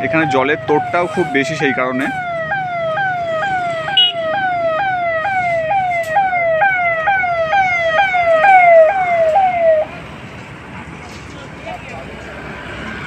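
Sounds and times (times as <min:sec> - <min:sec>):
electronic siren sweeping: 0:00.0 - 0:09.9
faint traffic noise: 0:00.0 - 0:13.0.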